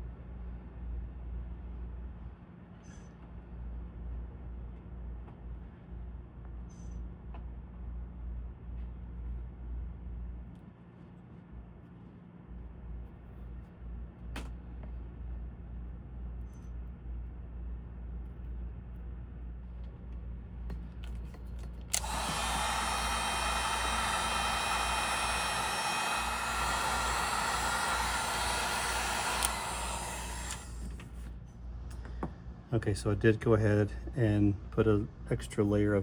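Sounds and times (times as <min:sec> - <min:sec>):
heat gun switch click: 0:21.9 - 0:31.1
heat gun blowing: 0:21.9 - 0:31.2.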